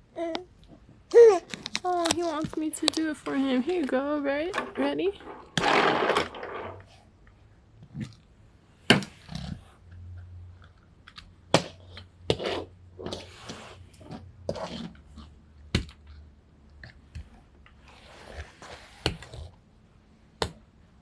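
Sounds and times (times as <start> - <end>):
objects tapping and knocking: 1.5 - 6.9.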